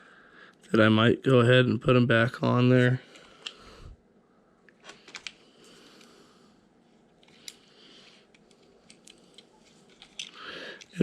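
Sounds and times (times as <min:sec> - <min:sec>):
low room hiss: 0:00.0 - 0:11.0
small parts clicking and tapping: 0:04.7 - 0:05.4, 0:07.1 - 0:11.0.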